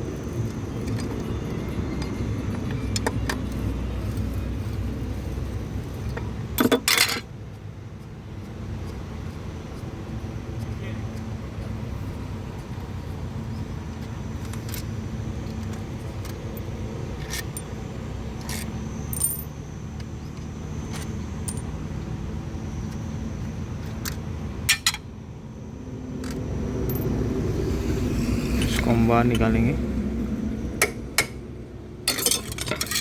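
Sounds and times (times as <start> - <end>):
steady low hum: 0.0 - 33.0
metallic clinks of tools: 32.1 - 33.0.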